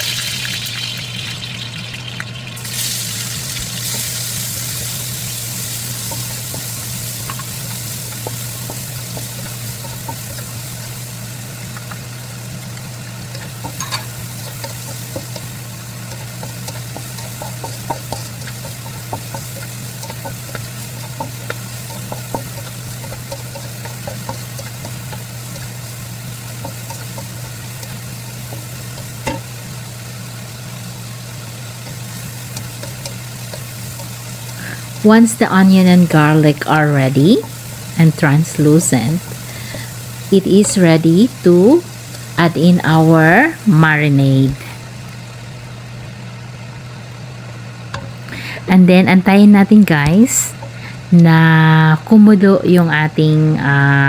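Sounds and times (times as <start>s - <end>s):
onion and garlic sizzling in oil: 0.0s - 54.0s
steady low hum: 2.3s - 54.0s
utensil clicking while stirring: 11.6s - 29.5s, 31.8s - 35.0s.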